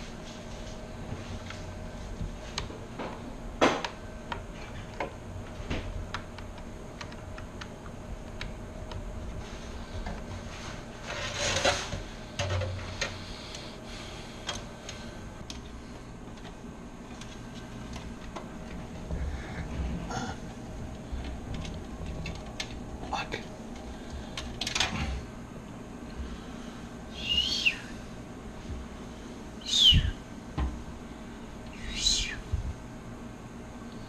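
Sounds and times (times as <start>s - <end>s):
low steady hum: 0.0s - 34.0s
rustling scrape: 10.3s - 12.0s.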